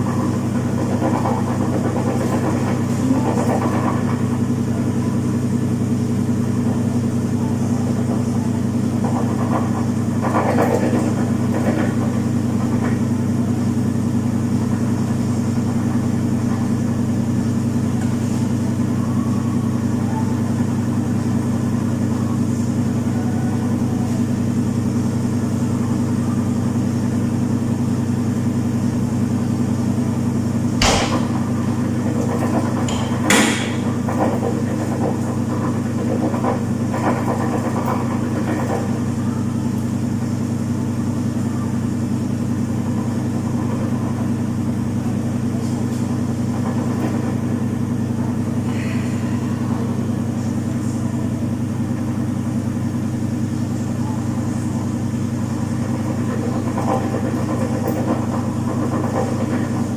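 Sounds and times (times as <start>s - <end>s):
washing machine humming: 0.0s - 59.9s
sharp knocks: 30.8s - 31.4s.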